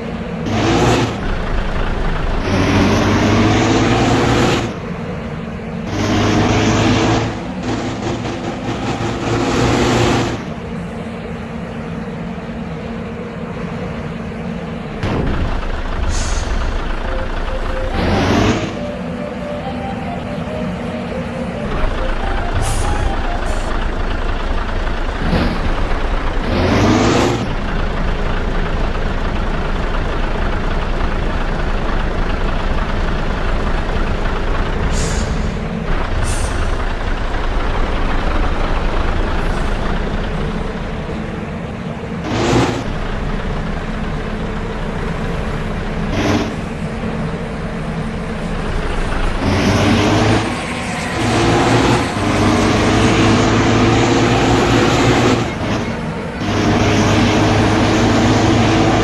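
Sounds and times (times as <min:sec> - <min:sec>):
heavy road traffic: 0:00.0 - 0:59.0
air brake bursts: 0:15.6 - 0:24.0, 0:34.8 - 0:37.4
horn-like sound: 0:16.8 - 0:24.1.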